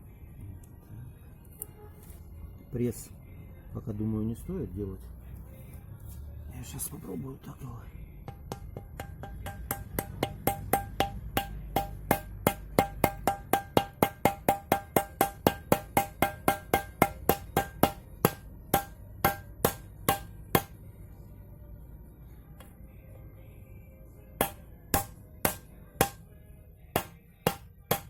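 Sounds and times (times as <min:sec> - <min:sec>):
hammer striking metal: 0:08.2 - 0:20.8, 0:24.4 - 0:26.3, 0:26.9 - 0:28.0.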